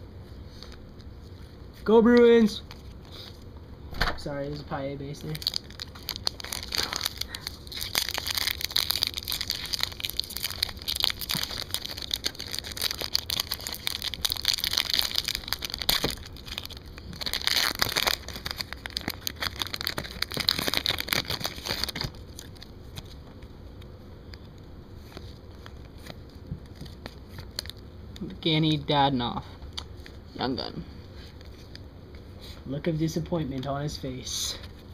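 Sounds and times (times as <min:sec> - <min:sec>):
foil wrappers crinkling: 0:05.0 - 0:23.2, 0:25.0 - 0:27.8.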